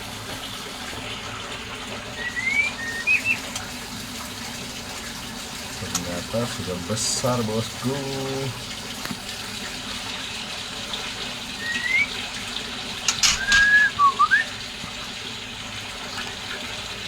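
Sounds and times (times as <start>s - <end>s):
short whistled notes: 2.2s - 3.4s, 11.6s - 12.2s, 13.2s - 14.5s.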